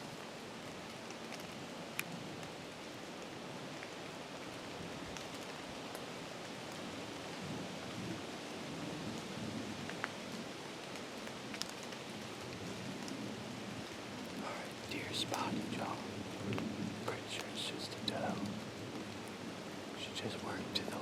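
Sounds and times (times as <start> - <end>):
steady rain falling: 0.0 - 21.0
raindrop ticks: 0.9 - 2.6, 9.8 - 10.2, 10.8 - 13.2, 13.8 - 21.0.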